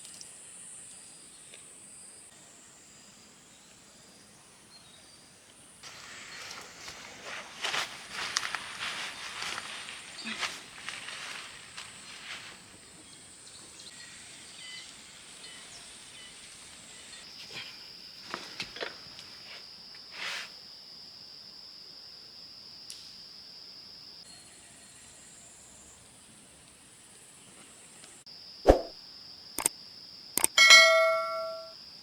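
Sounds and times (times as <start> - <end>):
insects calling: 0.0 - 21.5
sharp knock: 28.7 - 28.9.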